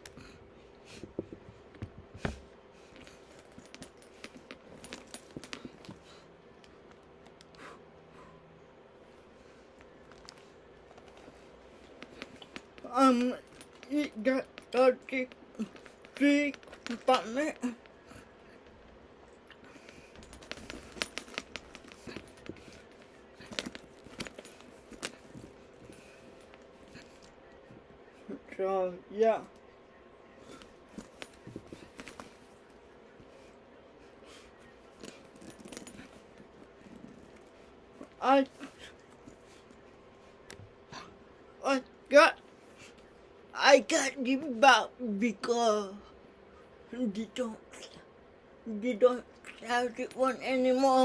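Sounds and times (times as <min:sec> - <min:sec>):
handbag metal hardware clinking: 0:20.0 - 0:27.4, 0:34.9 - 0:37.5.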